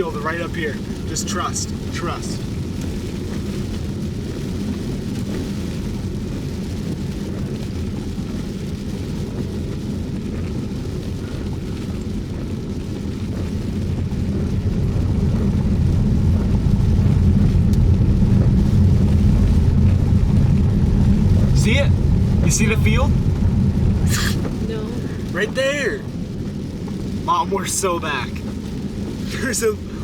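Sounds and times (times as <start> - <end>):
car road and engine rumble: 0.0 - 30.0.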